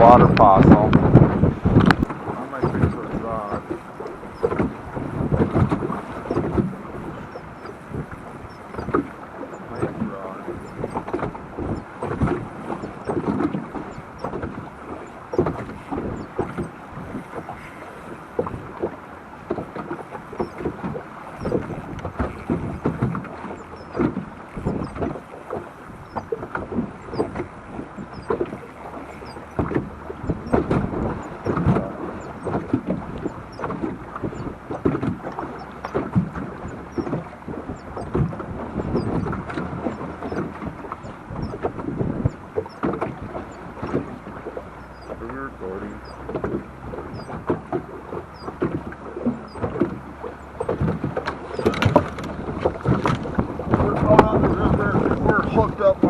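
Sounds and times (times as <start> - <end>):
river water lapping: 0.0 - 56.0
wind buffeting microphone: 0.0 - 56.0.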